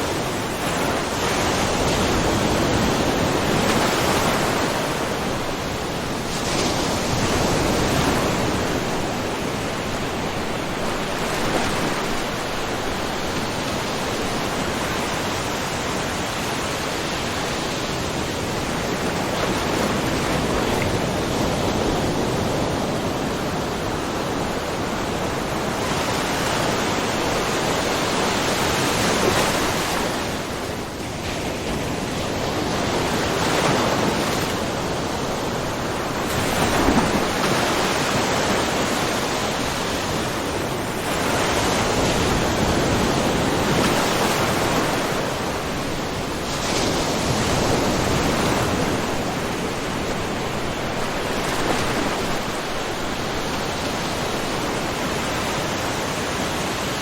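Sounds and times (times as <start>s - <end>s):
small waves splashing on rocks: 35.8s - 38.2s.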